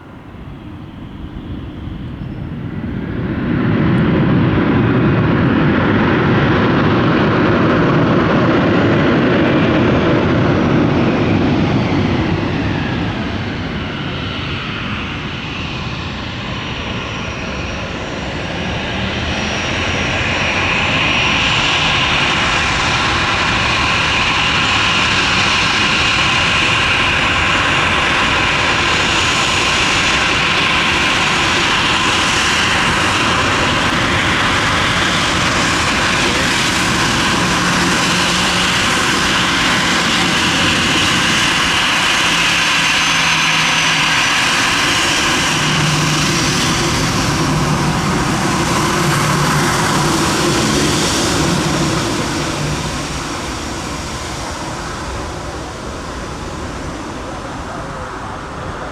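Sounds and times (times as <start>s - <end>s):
aircraft engines running: 0.0s - 58.9s
high engine whine: 0.0s - 58.9s.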